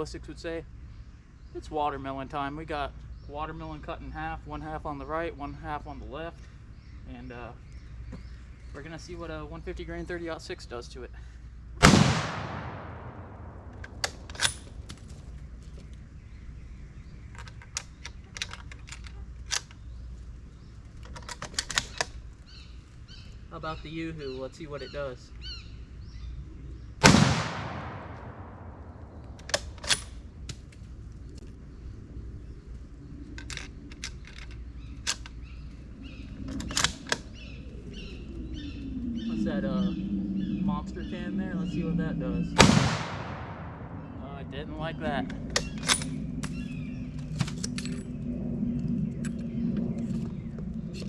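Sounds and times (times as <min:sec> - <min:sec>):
faint birds chirping: 0:00.0 - 0:51.0
rifle bolt metallic clicks: 0:12.2 - 0:15.0, 0:17.3 - 0:19.8, 0:21.0 - 0:22.2, 0:29.2 - 0:30.6, 0:36.5 - 0:37.3, 0:45.3 - 0:48.1.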